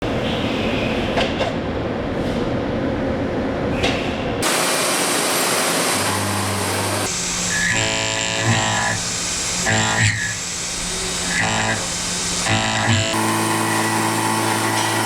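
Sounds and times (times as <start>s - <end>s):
milling machine cutting metal: 4.4s - 15.0s.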